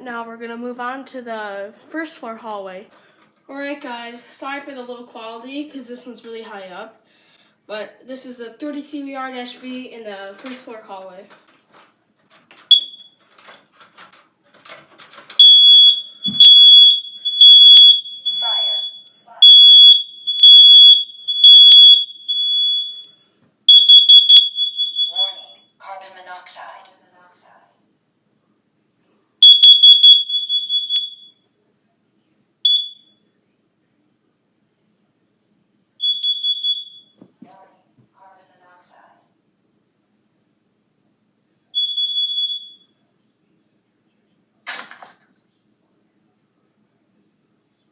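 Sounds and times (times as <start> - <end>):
smoke alarm long beeps: 12.6 - 13.5, 15.1 - 25.8, 29.4 - 31.5, 32.6 - 33.3, 36.0 - 37.2, 41.7 - 43.0.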